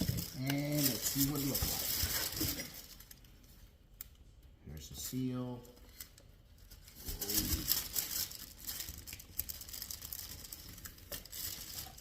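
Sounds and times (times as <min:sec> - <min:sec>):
packaging crackling and rustling: 0:00.0 - 0:03.3, 0:05.9 - 0:12.0.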